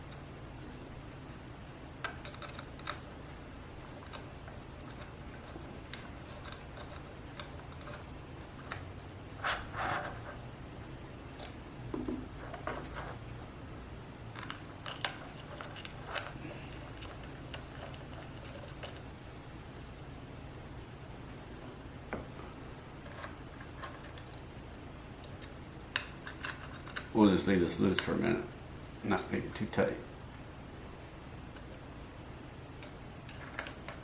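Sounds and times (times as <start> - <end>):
small metal parts clicking and scraping: 2.0 - 3.1, 4.0 - 10.4, 14.3 - 19.1, 23.0 - 27.2.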